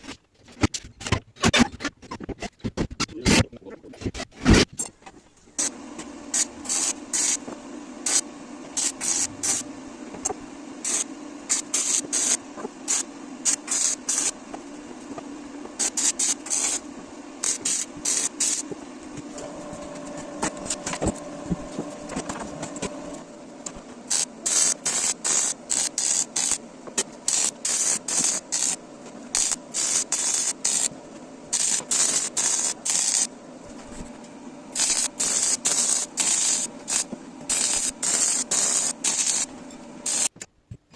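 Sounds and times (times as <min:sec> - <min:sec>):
steady motor hum: 0:05.3 - 0:40.4
compressed air hiss bursts: 0:05.6 - 0:09.7, 0:10.8 - 0:14.4, 0:15.8 - 0:18.8, 0:24.1 - 0:26.6, 0:27.2 - 0:30.9, 0:31.5 - 0:33.3, 0:34.7 - 0:40.3.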